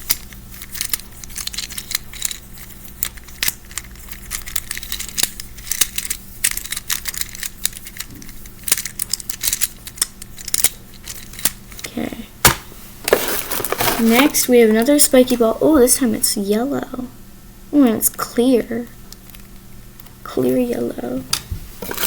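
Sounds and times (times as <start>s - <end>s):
crinkling: 13.0s - 15.0s, 21.8s - 22.0s.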